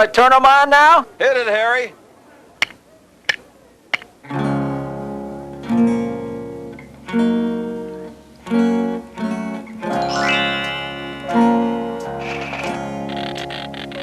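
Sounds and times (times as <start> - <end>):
strummed guitar chords: 4.3 - 14.0.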